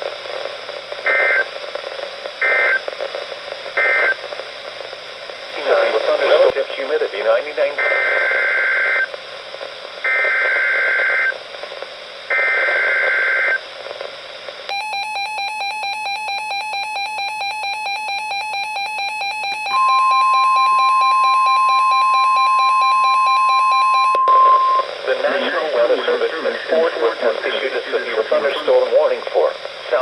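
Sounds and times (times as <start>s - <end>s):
rapidly pulsing electronic alarm: 14.7s - 25.9s
steady warning alarm tone: 14.7s - 26.8s.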